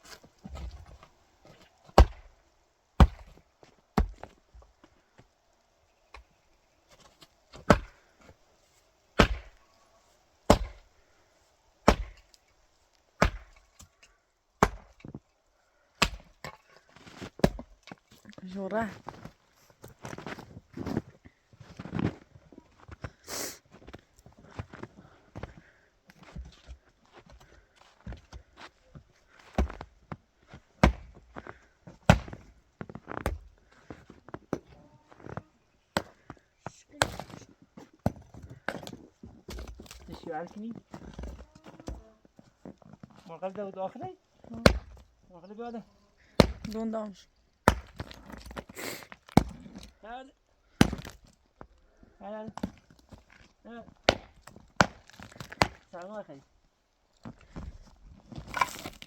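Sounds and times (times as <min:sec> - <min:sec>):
wood chopping blows: 0:01.9 - 0:02.4, 0:03.0 - 0:03.4, 0:07.5 - 0:08.0, 0:09.2 - 0:09.6, 0:10.5 - 0:10.9, 0:11.8 - 0:12.3, 0:13.2 - 0:13.7, 0:14.6 - 0:15.0, 0:16.0 - 0:16.6, 0:30.8 - 0:32.5.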